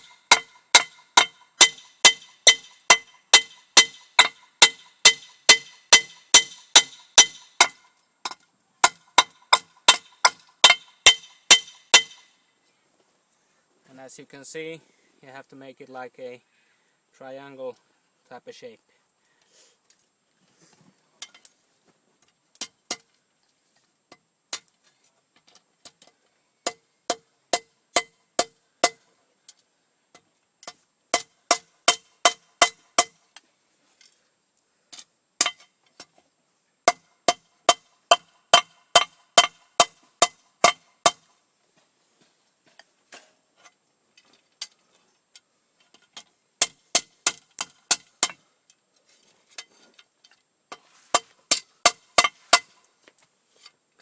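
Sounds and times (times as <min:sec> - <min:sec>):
hammer striking steel on anvil: 0:00.0 - 0:07.9, 0:08.8 - 0:12.3.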